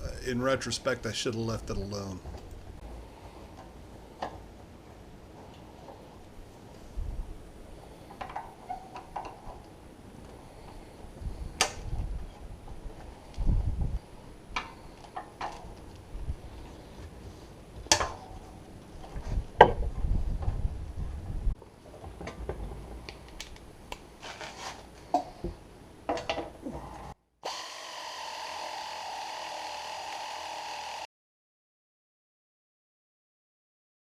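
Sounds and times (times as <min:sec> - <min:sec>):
power tool running: 0:27.4 - 0:31.1.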